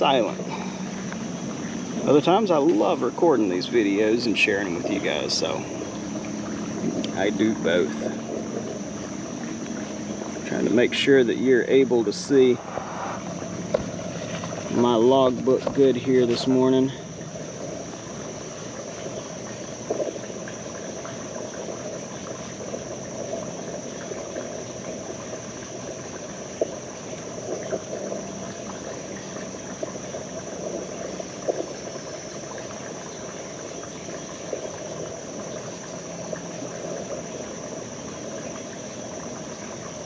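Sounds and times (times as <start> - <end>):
creek water rushing: 0.0 - 40.0
thin high hiss: 12.2 - 15.3.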